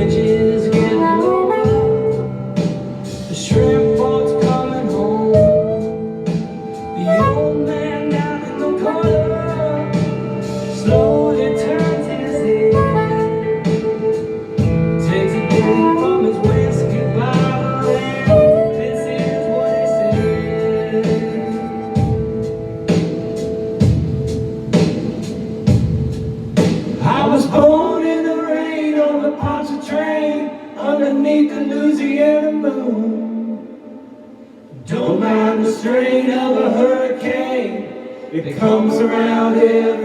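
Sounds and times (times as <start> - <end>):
electric guitar melody: 0.0 - 27.0
blues-rock band playing: 0.0 - 27.4.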